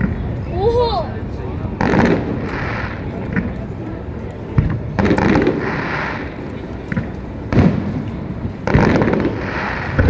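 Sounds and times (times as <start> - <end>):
fireworks booming: 7.5 - 10.0.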